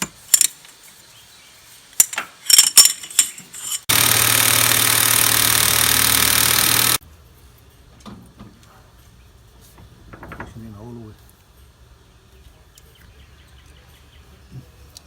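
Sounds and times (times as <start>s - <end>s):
metal tools clinking: 0.3s - 0.6s, 2.0s - 3.9s
impact wrench running: 2.0s - 7.0s.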